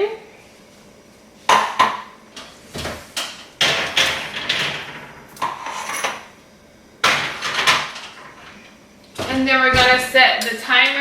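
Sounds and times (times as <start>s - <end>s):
metal tin scraping on rack: 5.4s - 6.2s.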